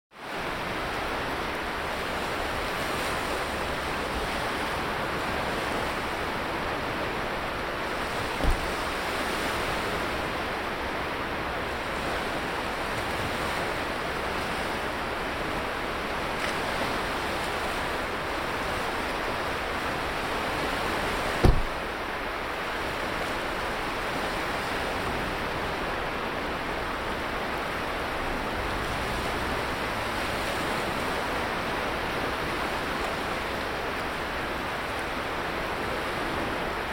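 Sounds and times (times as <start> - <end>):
surf washing onto beach: 0.2 - 36.9
low thumps: 8.4 - 8.8, 21.4 - 21.8.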